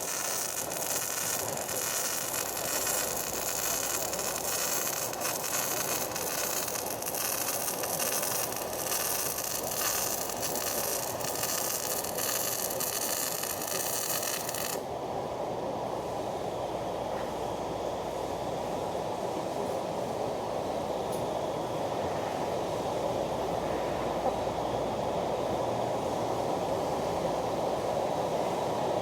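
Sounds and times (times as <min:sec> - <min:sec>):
arc welding crackling hiss: 0:00.0 - 0:14.9.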